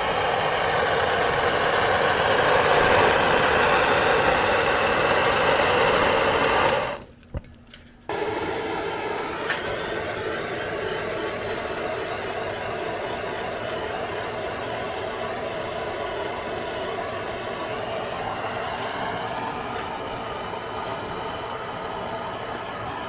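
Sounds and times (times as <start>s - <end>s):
mechanical running noise: 0.0s - 7.1s.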